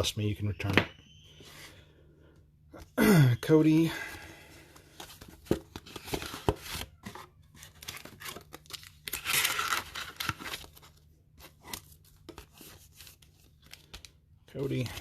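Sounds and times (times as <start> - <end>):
paper packs clicking and crinkling: 4.1 - 15.0.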